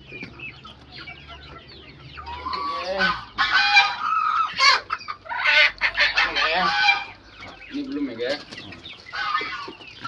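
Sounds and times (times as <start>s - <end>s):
chicken squawking in alarm: 2.2s - 7.2s, 9.1s - 9.8s.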